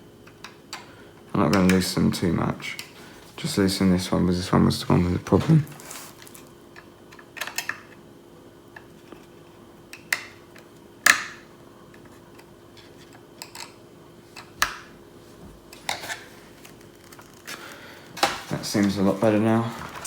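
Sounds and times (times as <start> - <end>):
faint steady hum: 0.0 - 20.0
small tools clicking and knocking: 11.9 - 13.8.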